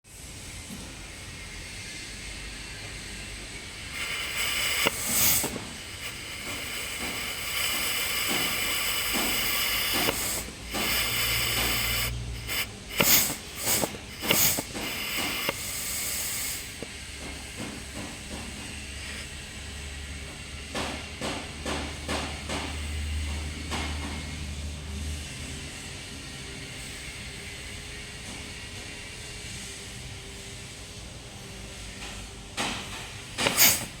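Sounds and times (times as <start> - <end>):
compressed air hissing from nozzle: 1.4 - 19.9, 33.3 - 34.0.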